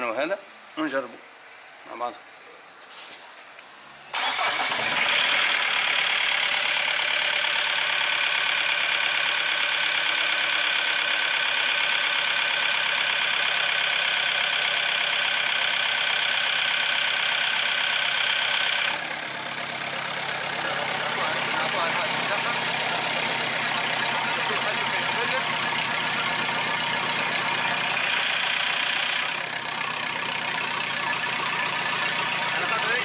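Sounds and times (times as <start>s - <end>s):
diesel engine running: 4.1s - 33.0s.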